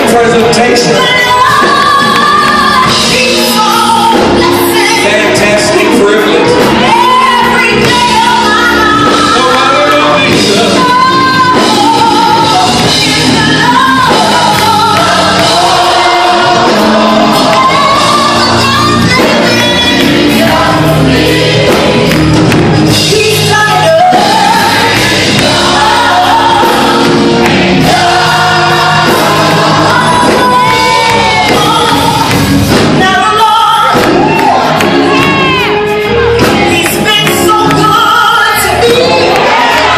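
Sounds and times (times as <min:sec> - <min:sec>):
choir singing gospel: 0:00.0 - 0:39.9
instrumental accompaniment: 0:00.0 - 0:39.9.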